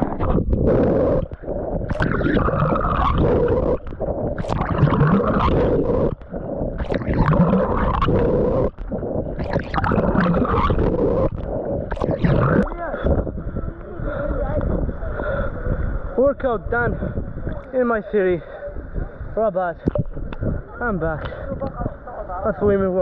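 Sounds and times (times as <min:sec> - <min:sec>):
water sloshing and rushing: 0:00.0 - 0:17.7.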